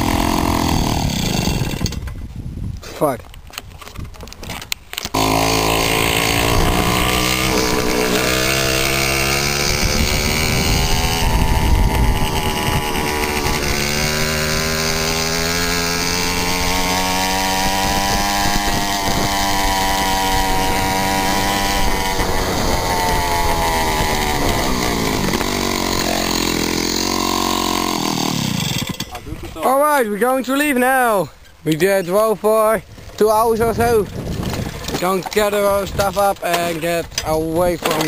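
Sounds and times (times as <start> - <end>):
moped engine revving: 0.0 - 1.9, 5.1 - 29.4.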